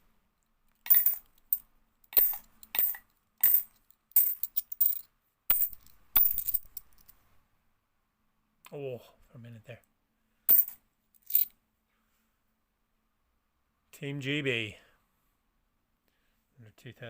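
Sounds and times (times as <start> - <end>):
coins clinking: 0.8 - 7.1, 10.5 - 11.5.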